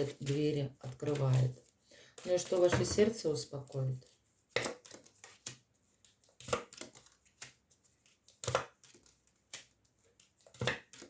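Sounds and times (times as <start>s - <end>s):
soft card handling: 0.0s - 11.0s
cards slapping on table: 10.4s - 11.0s.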